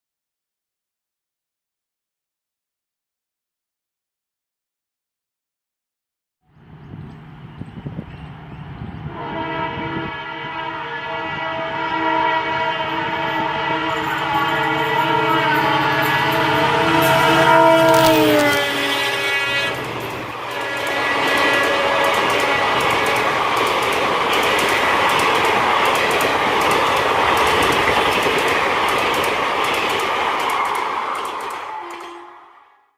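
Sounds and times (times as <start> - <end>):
train rumble and clatter: 6.5 - 32.6
locomotive horn blast: 9.0 - 23.3, 31.7 - 32.9.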